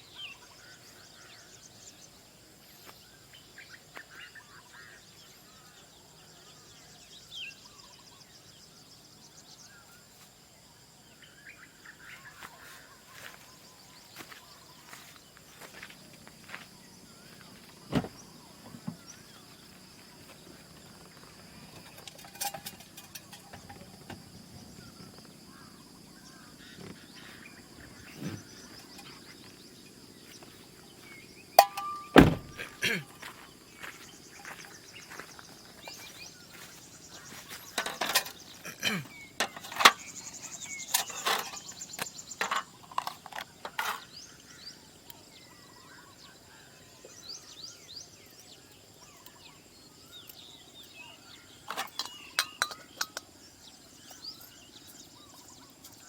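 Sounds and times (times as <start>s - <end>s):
objects knocking and clattering: 21.7s - 24.3s, 31.6s - 32.6s, 37.7s - 40.2s, 40.9s - 44.1s, 51.7s - 53.3s.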